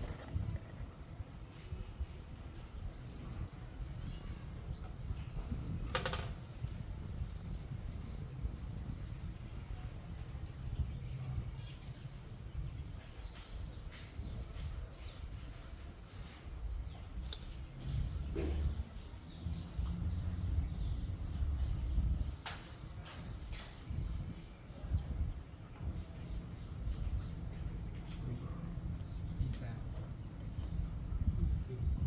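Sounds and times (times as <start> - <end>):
low outdoor rumble: 0.0 - 14.8, 16.6 - 22.5
small birds chirping: 0.0 - 31.8.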